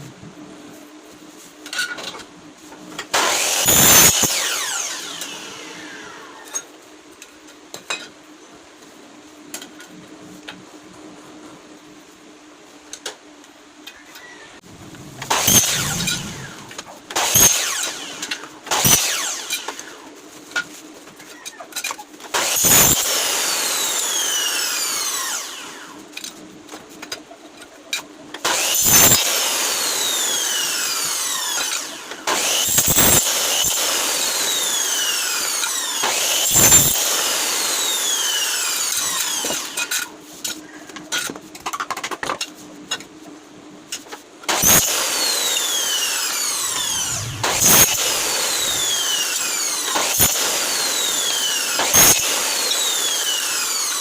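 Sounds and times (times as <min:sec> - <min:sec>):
power tool cutting wood: 0:03.0 - 0:06.6, 0:15.0 - 0:20.1, 0:22.3 - 0:26.0, 0:28.4 - 0:40.1, 0:44.5 - 0:54.0.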